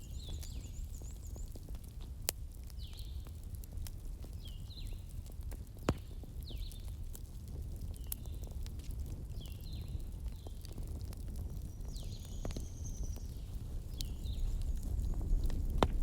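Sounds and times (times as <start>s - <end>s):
low rumble of flames: 0.0s - 16.0s
wood fire crackling and popping: 0.0s - 16.0s.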